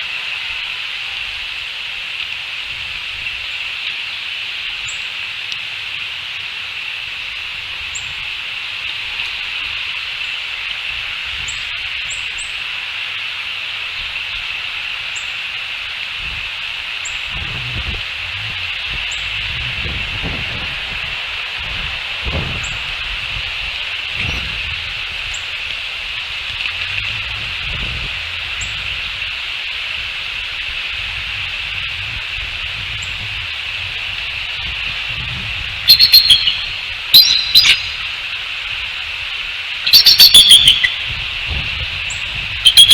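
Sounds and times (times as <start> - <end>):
high-pitched hiss of chorus: 7.6 - 42.6
small birds chirping: 14.2 - 42.9
low rumble: 17.2 - 38.0
small bird chirps: 35.9 - 38.2, 39.9 - 41.1, 42.1 - 42.9.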